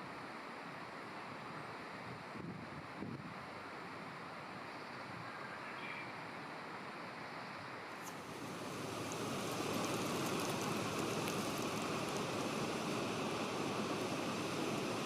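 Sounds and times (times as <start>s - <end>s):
flowing water rushing: 8.1s - 15.0s.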